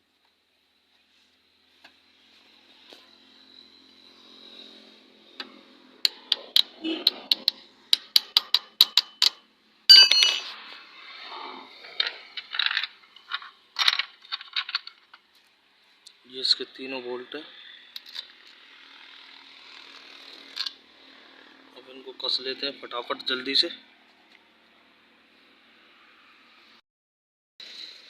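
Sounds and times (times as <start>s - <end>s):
metal clinking and scraping: 8.2s - 10.8s, 11.8s - 15.2s
ringing metal clank: 9.9s - 10.5s.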